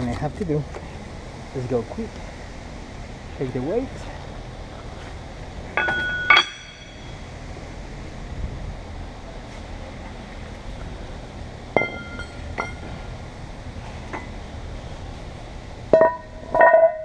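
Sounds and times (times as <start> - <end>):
weights clinking on glass: 5.8 - 7.0, 11.8 - 13.0.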